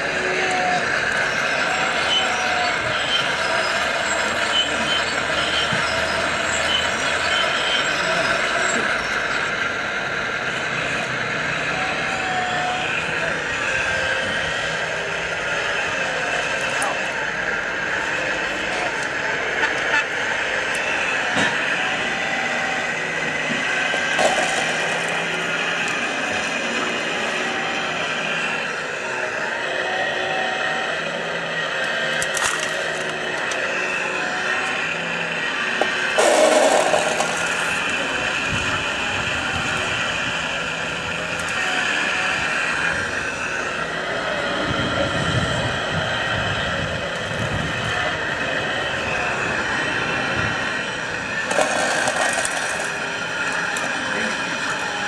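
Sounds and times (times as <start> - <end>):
electric motors whining: 0.0 - 55.0
model construction machines running: 0.0 - 55.0
gritty rumble: 11.8 - 28.8, 31.2 - 55.0.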